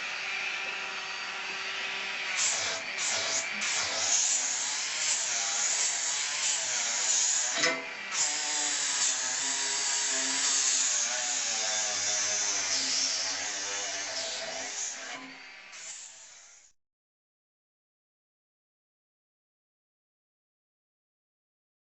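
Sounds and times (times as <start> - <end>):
handheld power tool running: 0.0 - 16.7.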